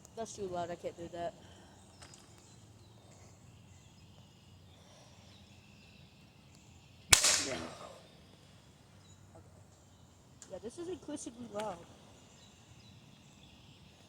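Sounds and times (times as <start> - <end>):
sharp crack of blow on ceiling fan: 7.1 - 7.9.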